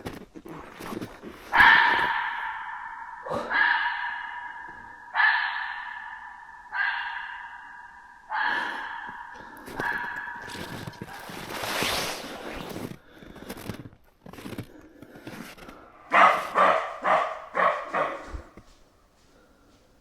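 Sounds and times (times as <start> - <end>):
animal barking: 1.4 - 12.1, 16.0 - 18.7.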